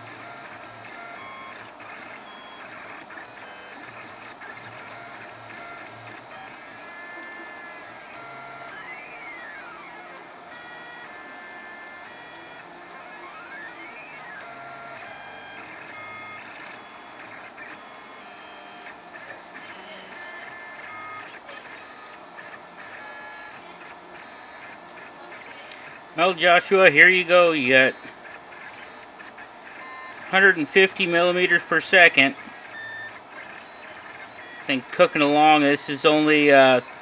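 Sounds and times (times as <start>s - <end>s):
stepper motors singing tones: 0.0s - 37.0s
cooling fans hissing: 29.3s - 37.0s.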